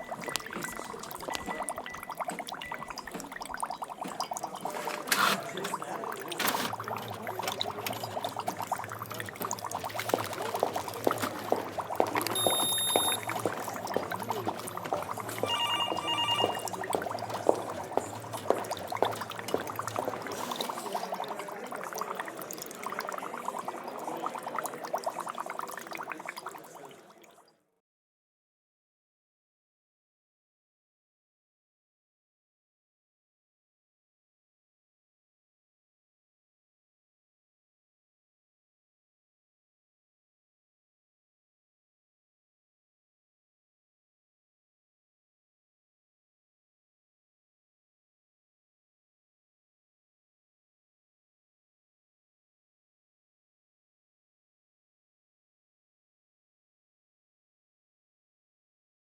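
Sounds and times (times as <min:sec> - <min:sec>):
liquid bubbling and gurgling: 0:00.0 - 0:27.5
short electronic beeps: 0:12.4 - 0:13.3, 0:15.4 - 0:16.8.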